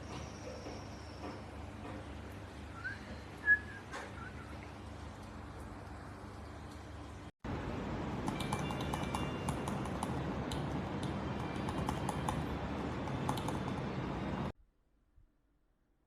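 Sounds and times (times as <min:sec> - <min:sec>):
mechanical keyboard typing: 0:08.2 - 0:13.8.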